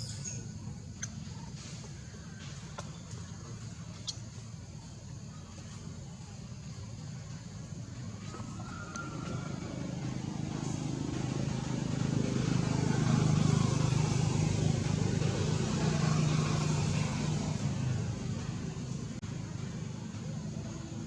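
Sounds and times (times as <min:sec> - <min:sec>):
vehicle engine passing: 0:07.7 - 0:21.0.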